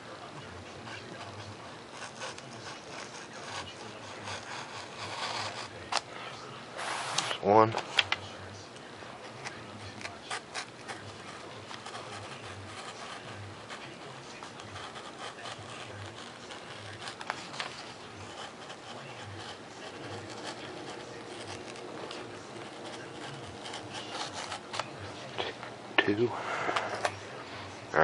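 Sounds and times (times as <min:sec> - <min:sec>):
knife scraping foam board: 0:00.8 - 0:06.1, 0:09.3 - 0:25.2.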